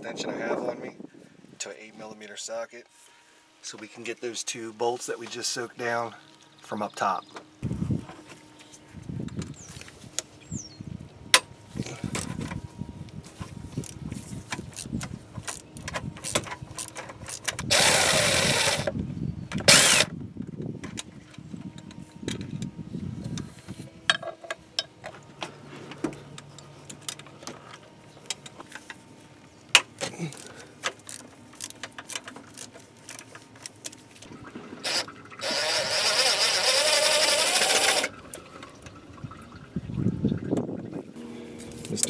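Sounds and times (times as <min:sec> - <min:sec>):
ratchet clicking: 0:14.7 - 0:18.9, 0:19.6 - 0:20.1, 0:34.9 - 0:38.1.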